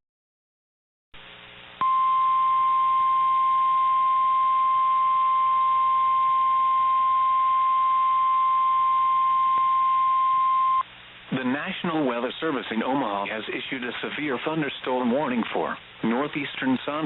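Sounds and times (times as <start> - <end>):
faint radio hiss: 1.2 - 7.5, 10.5 - 17.0
high-pitched warning tone: 1.8 - 10.8.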